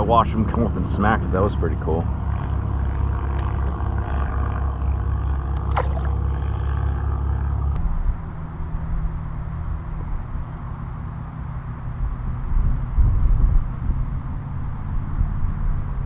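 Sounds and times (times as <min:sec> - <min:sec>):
wind buffeting microphone: 0:12.2 - 0:16.0.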